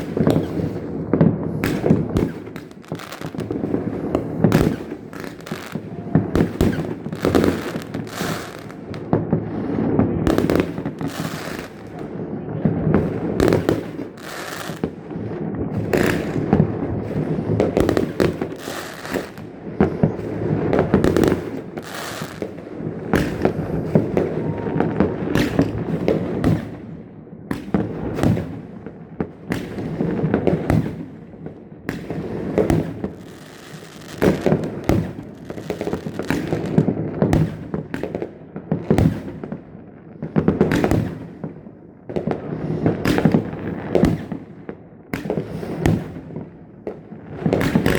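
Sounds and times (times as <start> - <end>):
rumble of firework bursts: 0.0 - 26.8
fireworks bangs and crackles: 0.0 - 47.9.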